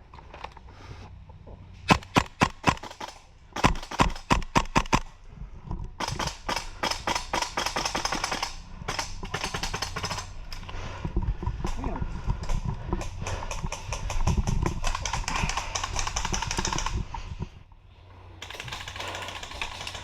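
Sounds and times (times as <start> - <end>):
airsoft guns firing: 1.9 - 5.2, 6.0 - 10.6, 13.2 - 17.0, 18.4 - 20.0.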